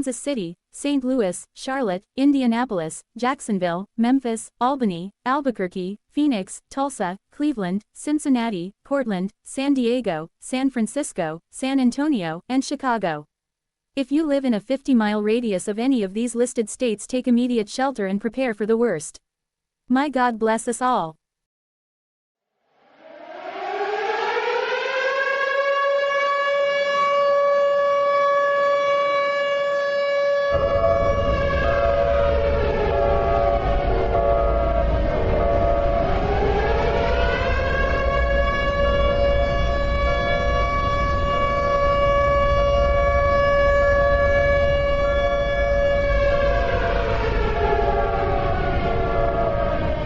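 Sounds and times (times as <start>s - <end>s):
higher siren tone: 22.6s - 50.0s
civil defense siren winding: 22.7s - 50.0s
low rumble: 30.6s - 50.0s.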